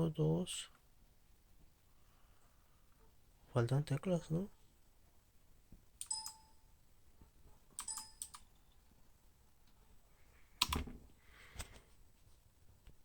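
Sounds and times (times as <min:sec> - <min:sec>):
keyboard keys clicking: 0:07.8 - 0:08.5, 0:10.6 - 0:11.0.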